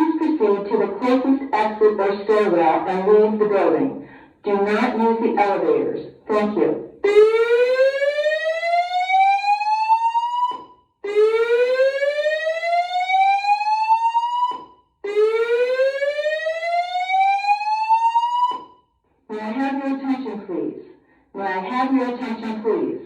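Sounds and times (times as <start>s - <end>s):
spoken announcements: 0.0s - 7.0s, 19.3s - 23.0s.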